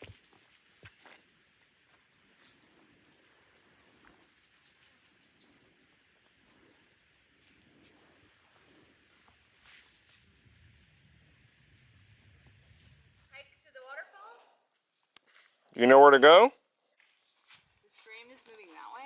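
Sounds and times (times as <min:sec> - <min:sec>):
faint forest ambience: 0:00.0 - 0:19.0.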